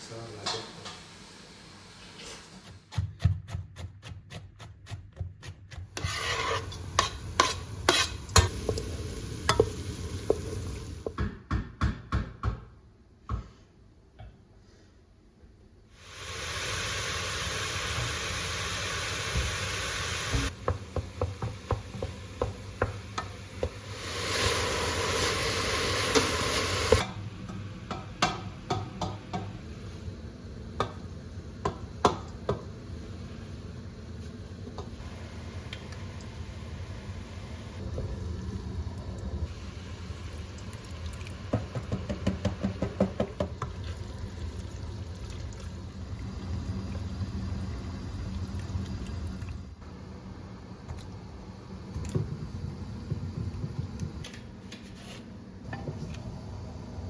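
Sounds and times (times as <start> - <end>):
utensil stirring and scraping pan: 3.8 - 8.9
food sizzling: 6.0 - 11.2, 16.0 - 27.7, 28.5 - 49.7.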